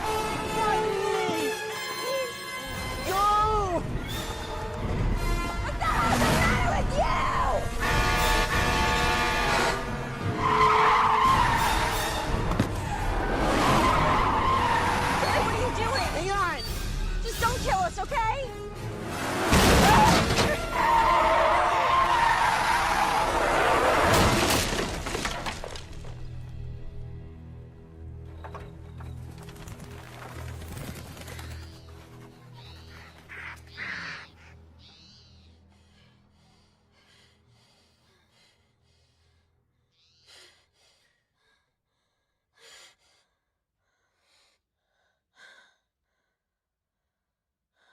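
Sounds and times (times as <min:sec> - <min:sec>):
car tyres squealing: 0:07.9 - 0:16.2, 0:19.2 - 0:24.1.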